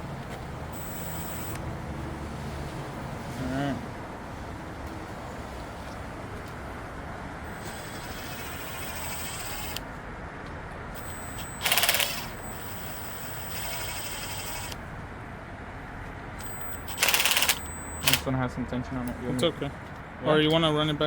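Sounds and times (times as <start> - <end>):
low shop hum: 0.0 - 21.0
impact wrench rattling burst: 16.4 - 18.3.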